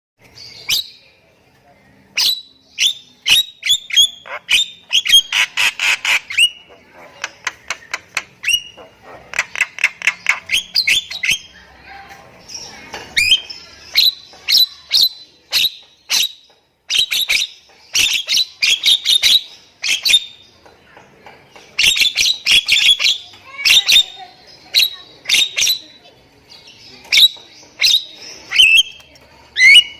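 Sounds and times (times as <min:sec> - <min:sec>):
myna whistling and squawking: 0:27.1 - 0:29.0, 0:29.6 - 0:29.9.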